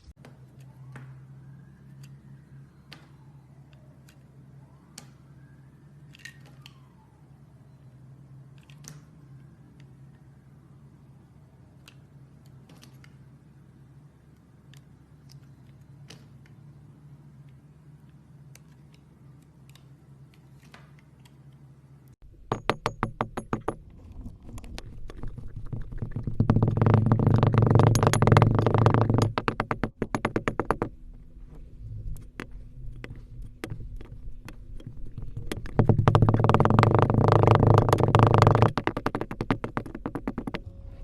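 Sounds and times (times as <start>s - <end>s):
crackling and popping: 23.6s - 40.7s.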